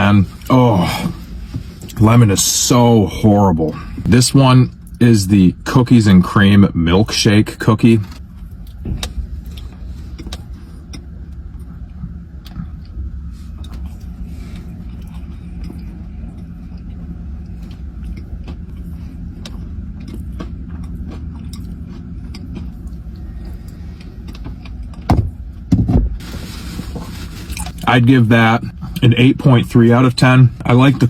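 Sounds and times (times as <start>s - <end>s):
low engine rumble: 0.0s - 31.0s
chewing cookie: 8.6s - 25.7s.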